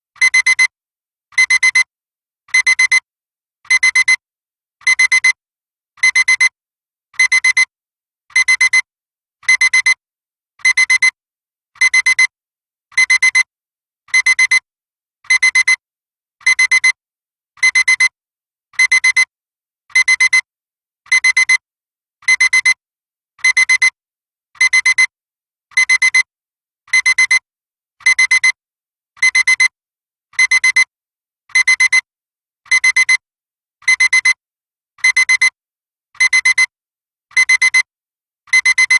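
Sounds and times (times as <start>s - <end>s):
digital alarm clock beeping: 1.4s - 1.9s, 3.7s - 4.2s, 17.6s - 18.2s, 28.0s - 28.6s, 29.2s - 29.7s, 30.4s - 30.9s, 31.6s - 32.1s, 32.7s - 33.2s, 33.9s - 34.4s, 35.0s - 35.6s, 36.2s - 36.7s, 37.3s - 37.9s, 38.5s - 38.9s.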